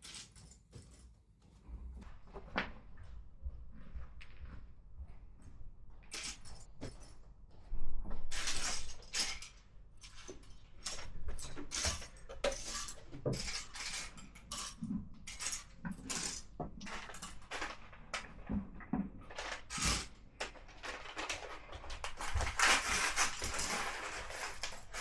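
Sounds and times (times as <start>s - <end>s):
plastic pieces clattering: 11.6s - 18.4s, 19.3s - 25.0s.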